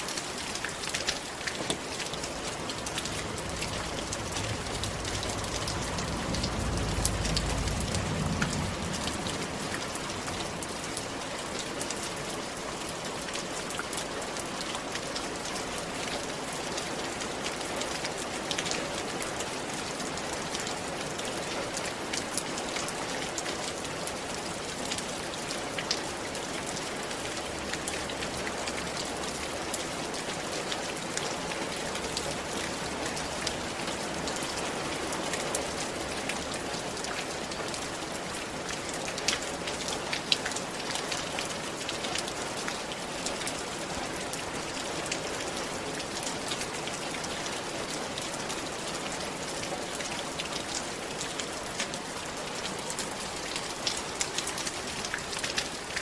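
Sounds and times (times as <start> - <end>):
rain falling on a roof: 0.0 - 56.0
low rumble: 2.6 - 10.7.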